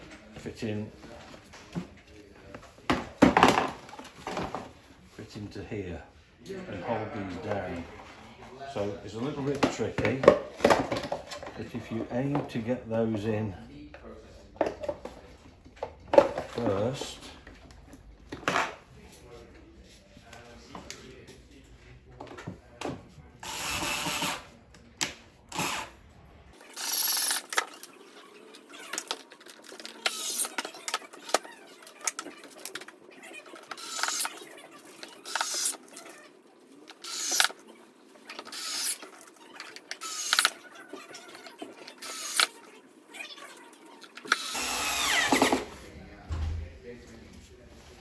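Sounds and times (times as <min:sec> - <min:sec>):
screwdriver driving screws: 0:26.7 - 0:27.9, 0:28.7 - 0:32.8, 0:33.6 - 0:36.2, 0:36.9 - 0:37.6, 0:38.3 - 0:40.6, 0:42.0 - 0:42.6, 0:44.1 - 0:45.6.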